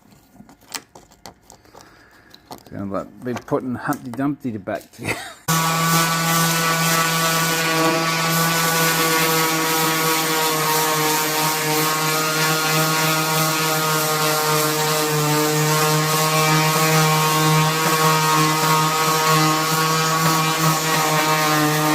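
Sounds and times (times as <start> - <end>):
power tool motor humming: 5.5 - 21.9.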